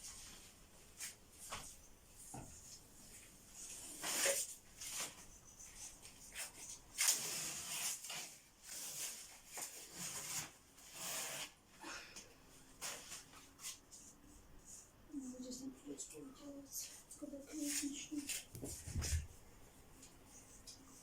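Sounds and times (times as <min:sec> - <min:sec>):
wallpaper tearing: 0:07.0 - 0:11.6.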